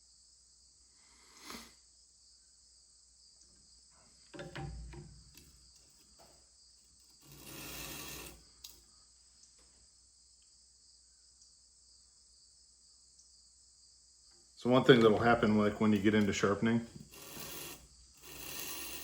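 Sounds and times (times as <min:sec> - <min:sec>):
rustling scrape: 0:07.1 - 0:08.5, 0:15.0 - 0:19.0
steady high hiss: 0:07.2 - 0:09.5.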